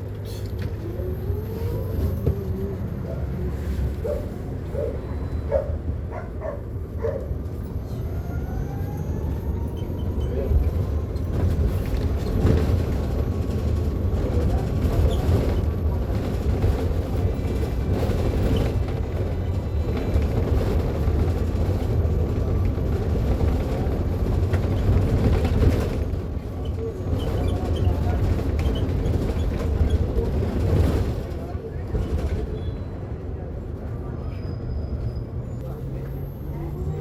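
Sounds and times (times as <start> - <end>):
low road noise rumble: 0.0 - 37.0.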